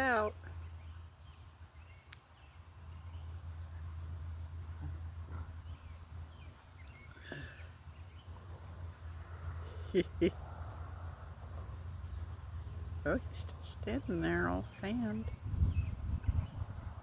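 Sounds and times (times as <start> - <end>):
insects trilling: 0.0 - 17.0
faint bird chirps: 0.2 - 8.6.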